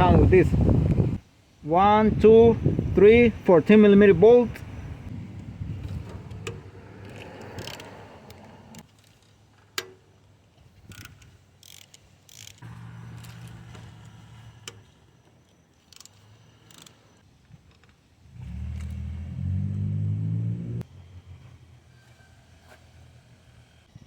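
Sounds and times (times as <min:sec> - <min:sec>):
socket ratchet clicking: 0:10.9 - 0:12.6.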